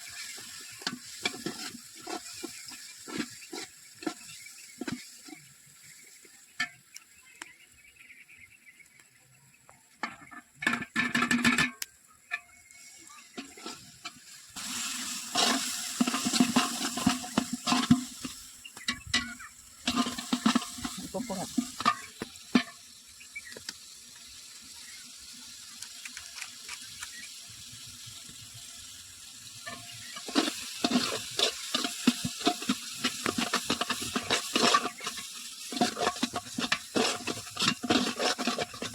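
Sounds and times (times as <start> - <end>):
spoon knocking and scraping pan: 0.0 - 5.5, 10.0 - 12.6, 13.3 - 22.9, 29.6 - 38.9
food sizzling in a pan: 0.0 - 7.3, 10.7 - 38.9.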